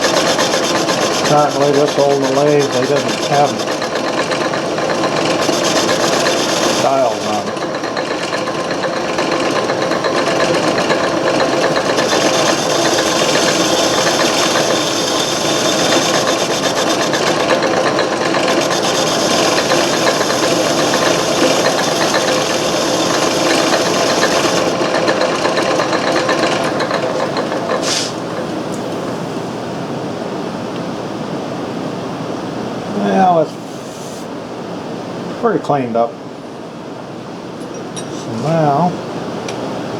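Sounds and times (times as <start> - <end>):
hiss of lathe cutting: 0.0 - 8.2, 8.8 - 28.2
metal lathe running: 0.0 - 29.9.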